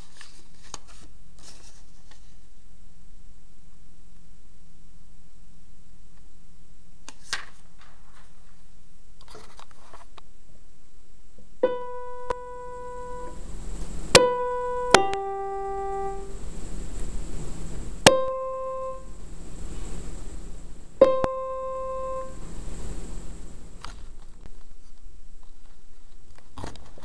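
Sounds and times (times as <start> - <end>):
soft clicks and rustles: 0.0 - 2.5, 7.1 - 10.3
keyboard chime notes: 11.6 - 13.4, 14.2 - 16.3, 18.1 - 19.1, 21.0 - 22.4
low hum: 11.6 - 24.7.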